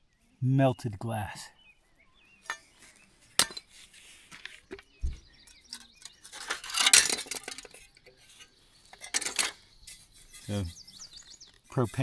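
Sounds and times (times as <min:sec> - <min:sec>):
glass and metal debris clinking: 0:03.4 - 0:03.7, 0:05.5 - 0:08.0, 0:08.9 - 0:09.6.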